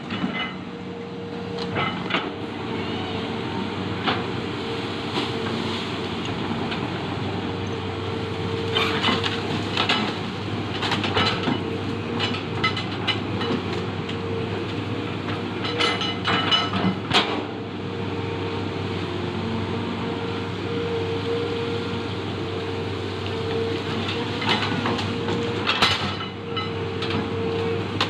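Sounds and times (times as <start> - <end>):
metal clanks and scrapes: 0.0 - 0.6, 1.6 - 2.3, 15.6 - 17.5
excavator diesel engine running: 0.0 - 28.0.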